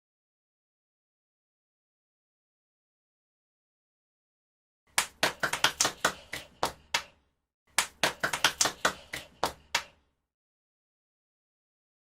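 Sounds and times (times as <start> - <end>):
hands clapping: 4.9 - 10.0.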